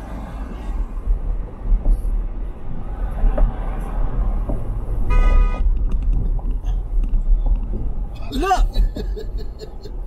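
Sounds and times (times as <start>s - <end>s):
truck cab road and engine rumble: 0.0s - 10.0s
car horn honk: 5.1s - 5.6s.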